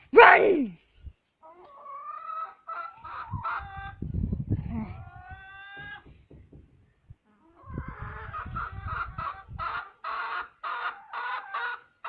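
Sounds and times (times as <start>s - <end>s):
chicken squawking: 1.4s - 6.0s, 7.3s - 12.0s.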